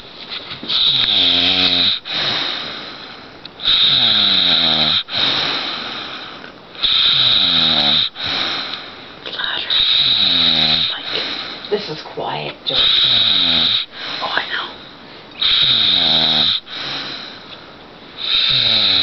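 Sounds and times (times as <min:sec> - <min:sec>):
man snoring: 0:00.7 - 0:02.9, 0:03.6 - 0:08.8, 0:09.7 - 0:11.4, 0:12.7 - 0:14.4, 0:15.4 - 0:17.3, 0:18.2 - 0:19.0.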